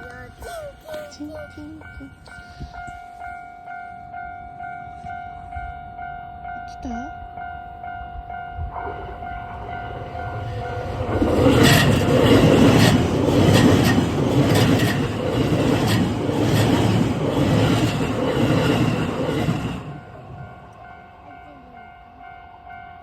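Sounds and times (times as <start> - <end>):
crossing bell ringing: 0.0 - 23.0
train wheels clacking over rail joints: 10.5 - 20.0.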